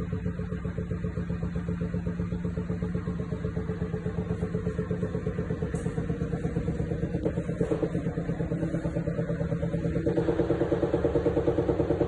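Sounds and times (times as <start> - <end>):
washing machine spinning with pulsing hum: 0.0 - 12.0.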